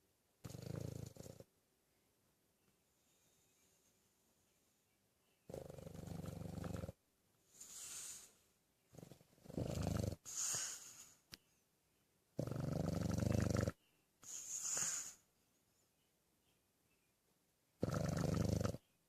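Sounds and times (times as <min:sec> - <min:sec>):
breathy hiss: 0:05.6 - 0:11.3, 0:12.4 - 0:15.3
person snoring: 0:09.4 - 0:10.8, 0:12.4 - 0:13.8, 0:17.8 - 0:18.8.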